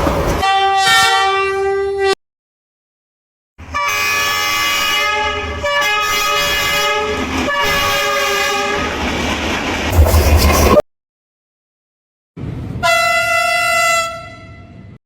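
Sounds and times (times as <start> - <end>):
train rumbling: 0.0 - 0.5, 4.2 - 10.8
train horn blasts: 0.4 - 2.2, 3.7 - 9.0, 12.8 - 14.9.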